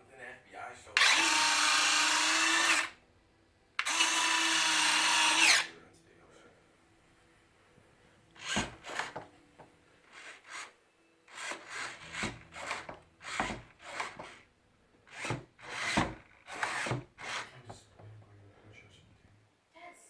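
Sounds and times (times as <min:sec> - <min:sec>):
model plane servos whirring: 0:01.0 - 0:03.0, 0:03.8 - 0:05.7, 0:08.4 - 0:09.2, 0:10.0 - 0:14.5, 0:15.1 - 0:17.6.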